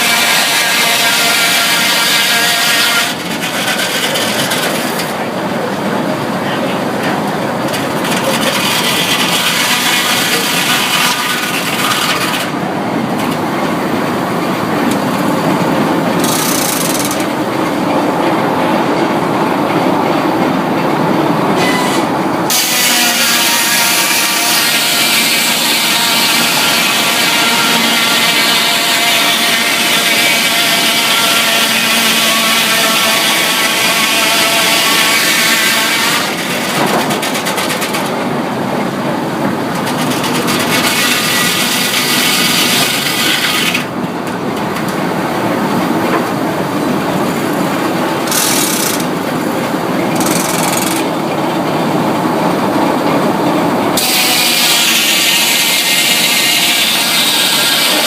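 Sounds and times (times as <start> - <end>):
sawmill saw cutting log: 0.0 - 5.4, 7.6 - 12.7, 14.7 - 17.4, 21.6 - 38.3, 39.7 - 44.0, 47.1 - 49.4, 54.0 - 58.0.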